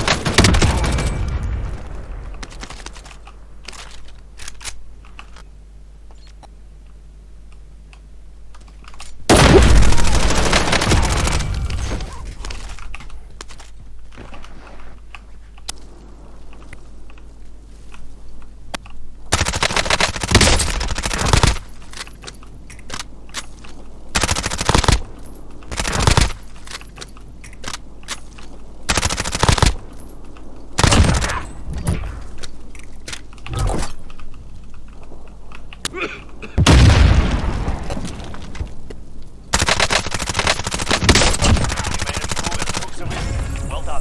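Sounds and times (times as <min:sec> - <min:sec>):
automatic gunfire bursts: 0:09.3 - 0:12.5, 0:19.3 - 0:21.7, 0:39.5 - 0:44.0.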